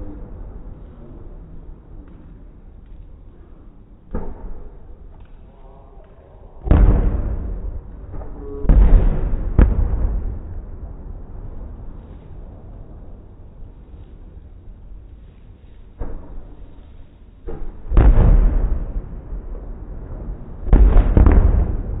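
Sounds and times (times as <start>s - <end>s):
fireworks booming: 4.1s - 14.3s, 15.9s - 22.0s
sharp firework crack: 6.6s - 12.7s, 15.8s - 22.0s.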